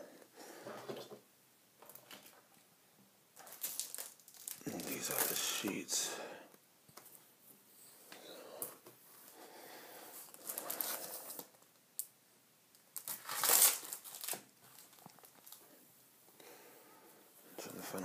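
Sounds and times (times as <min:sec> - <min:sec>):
packaging crinkling: 0:03.4 - 0:05.8, 0:13.0 - 0:15.6.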